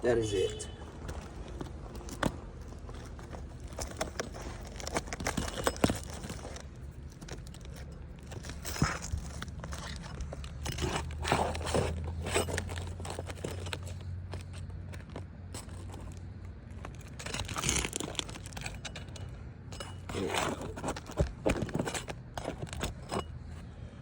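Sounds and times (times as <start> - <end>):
roof shingles crunching and scraping: 0.8 - 23.7.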